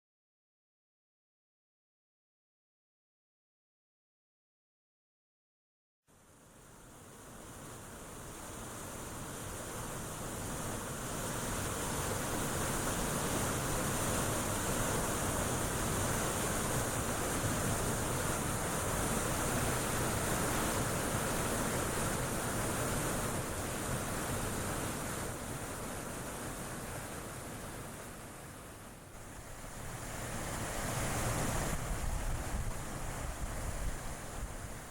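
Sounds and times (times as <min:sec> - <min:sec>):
waterfall rushing: 0:09.9 - 0:28.6, 0:29.2 - 0:34.9.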